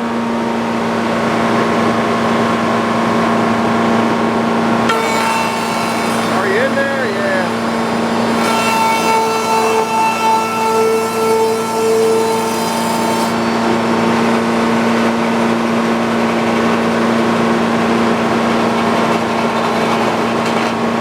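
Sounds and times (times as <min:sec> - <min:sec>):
sawmill engine humming: 0:04.5 - 0:21.0
circular saw blade ringing: 0:04.9 - 0:15.2.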